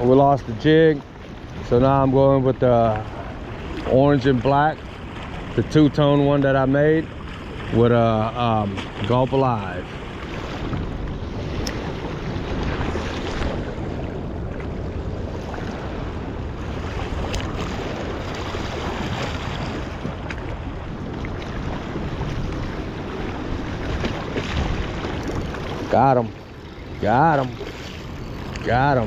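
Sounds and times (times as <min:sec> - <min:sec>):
wind on microphone: 0:00.0 - 0:29.0
river water rushing: 0:21.3 - 0:29.0.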